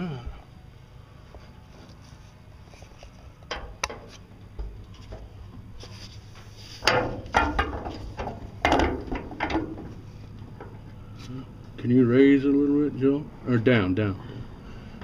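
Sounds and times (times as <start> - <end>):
scraping clunks: 3.4 - 11.8.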